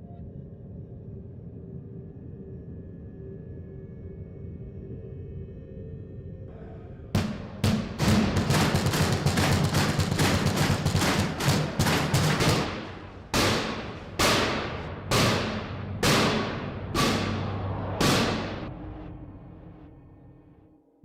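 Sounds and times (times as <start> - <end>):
banging on metal echoing: 7.2 - 18.7.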